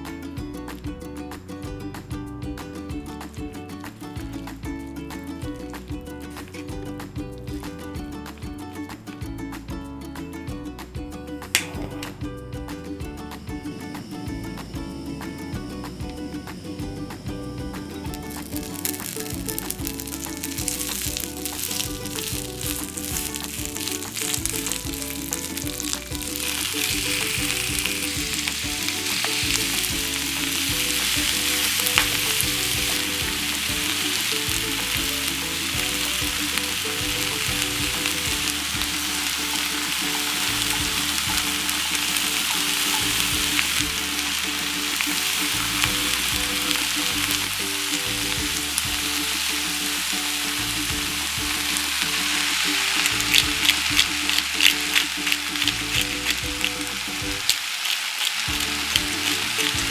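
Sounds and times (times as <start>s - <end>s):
food sizzling in a pan: 13.3s - 59.9s.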